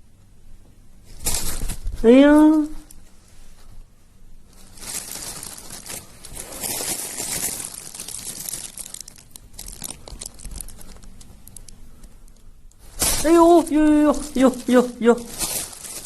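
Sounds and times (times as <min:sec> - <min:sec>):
plastic crinkling and rustling: 0:01.0 - 0:02.0, 0:04.4 - 0:16.0.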